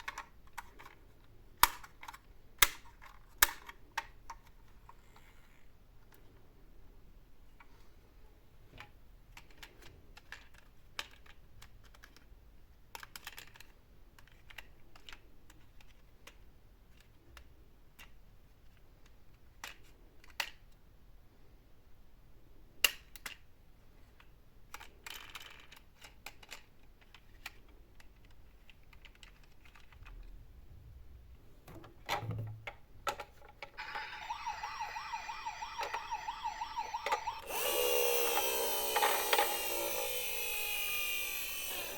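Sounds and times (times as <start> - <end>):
toy vehicles clicking and rattling: 0.0 - 5.6, 9.4 - 17.1, 24.7 - 30.1, 33.1 - 41.9
toy electronic siren warbling: 33.8 - 41.9.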